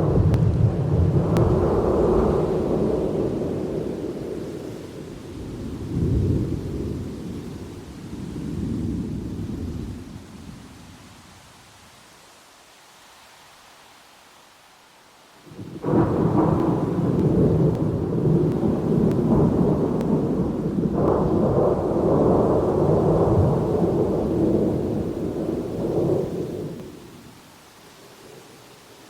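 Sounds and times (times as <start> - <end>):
thunder clap and rumble: 0.0 - 4.7, 5.3 - 7.4, 15.6 - 27.2
faint steady hiss: 0.0 - 29.0.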